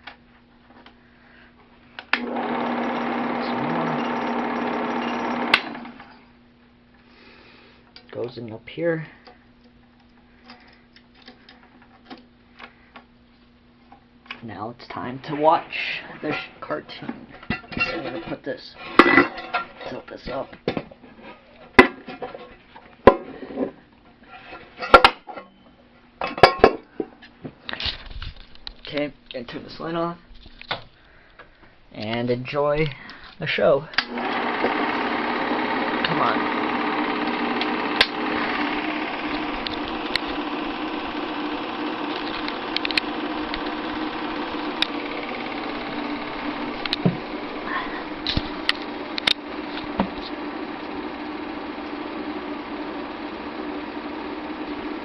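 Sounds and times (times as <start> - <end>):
film projector whirring and clattering: 2.0 - 6.4, 14.2 - 21.0, 21.7 - 23.5, 33.9 - 55.0
metallic clicks of film projector: 35.9 - 47.0, 48.2 - 51.1.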